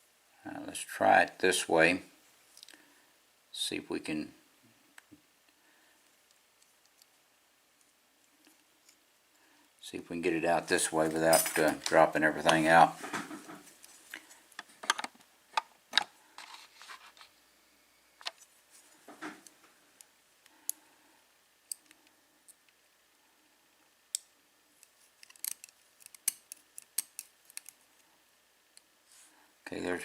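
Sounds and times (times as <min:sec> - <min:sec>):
padlock metal clicks and scrapes: 0:25.2 - 0:27.8.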